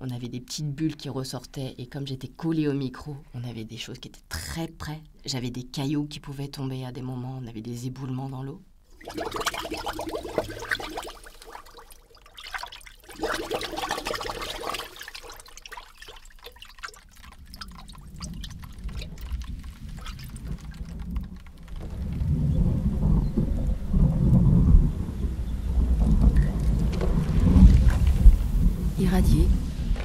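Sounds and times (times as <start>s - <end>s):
water splashing in basin: 8.9s - 22.4s
deep low rumble: 17.5s - 30.0s.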